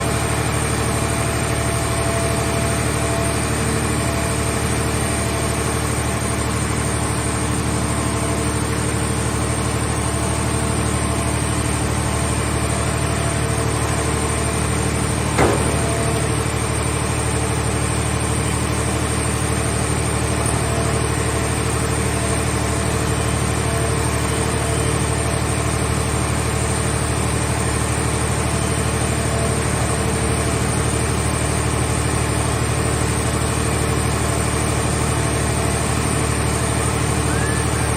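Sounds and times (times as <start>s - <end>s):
hydraulic power unit droning: 0.0s - 37.9s
sharp knock: 15.4s - 16.2s.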